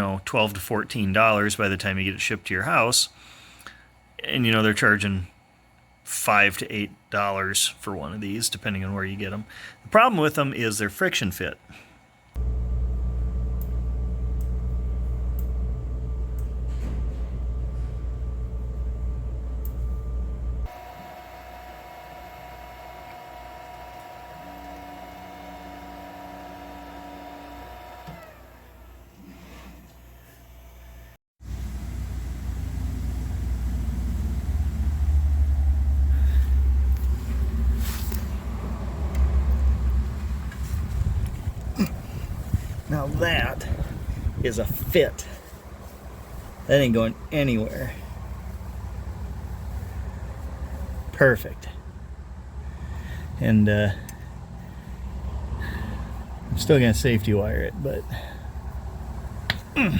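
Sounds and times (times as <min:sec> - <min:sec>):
faint steady hum: 0:00.0 - 0:28.8
low mechanical rumble: 0:12.1 - 0:59.9
wind rumbling on microphone: 0:40.5 - 0:45.0.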